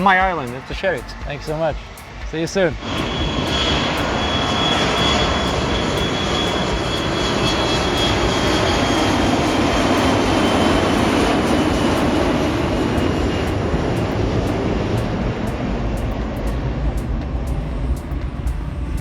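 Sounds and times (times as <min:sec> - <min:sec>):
jet engines running: 0:00.0 - 0:19.0
thin high whine: 0:00.0 - 0:19.0.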